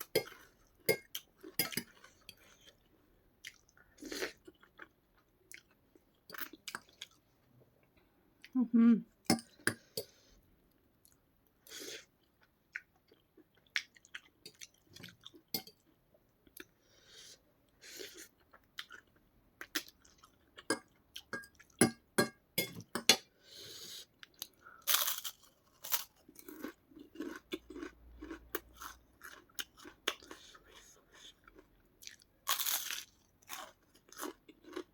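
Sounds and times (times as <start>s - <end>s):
person chewing crisp food: 0.0s - 7.2s, 11.0s - 16.8s, 17.7s - 21.8s, 24.1s - 34.9s.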